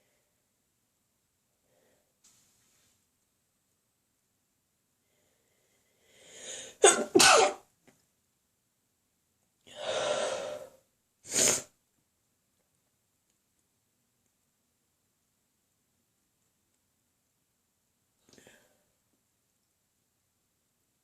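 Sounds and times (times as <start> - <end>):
person sneezing: 6.8 - 7.6, 11.3 - 11.7.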